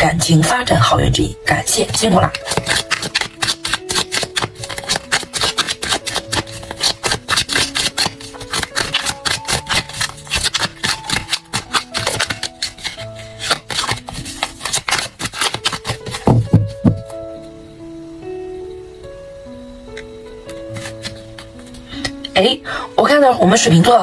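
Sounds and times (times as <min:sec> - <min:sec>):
soft background music: 0:00.0 - 0:24.0
cards being shuffled: 0:01.7 - 0:17.2, 0:20.5 - 0:22.3.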